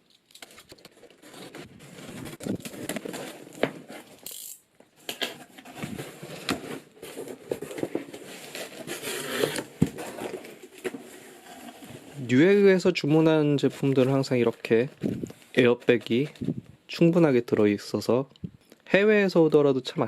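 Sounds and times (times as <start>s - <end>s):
cardboard box rustling and scraping: 0.9s - 4.2s, 5.4s - 12.6s.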